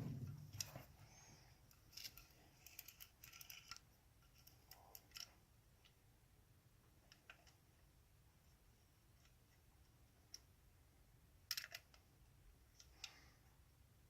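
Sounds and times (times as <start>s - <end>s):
lock pick clicking and scraping: 1.7s - 5.4s.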